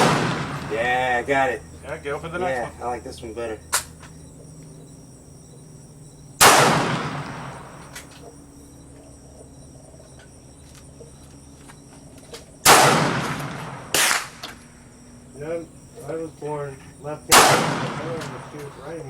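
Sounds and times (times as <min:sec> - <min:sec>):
rifle shots echoing: 0:00.0 - 0:01.5, 0:06.4 - 0:08.1, 0:12.6 - 0:14.6, 0:17.3 - 0:18.9.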